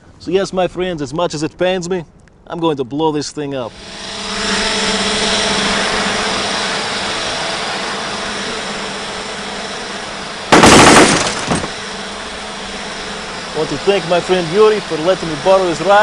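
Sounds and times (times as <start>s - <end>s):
mechanical hum with tones: 3.7s - 16.0s
loud explosion: 10.5s - 11.7s.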